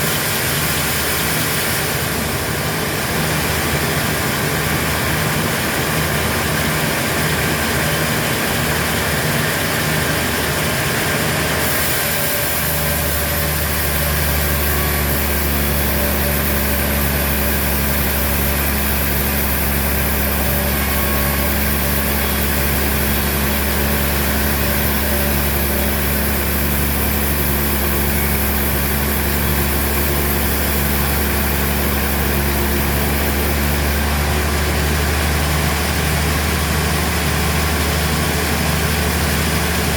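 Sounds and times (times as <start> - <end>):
heavy machinery engine humming: 0.0 - 39.9.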